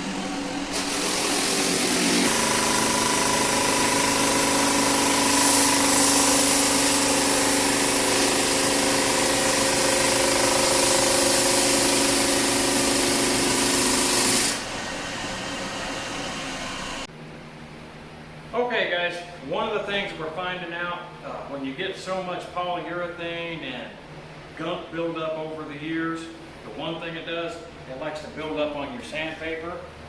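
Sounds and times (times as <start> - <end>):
floor sander on wooden floor: 0.0 - 17.1.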